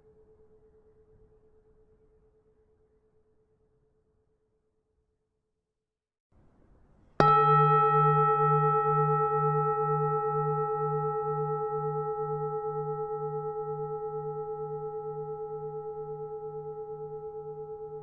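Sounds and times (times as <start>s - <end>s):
temple bell ringing: 7.2s - 18.0s.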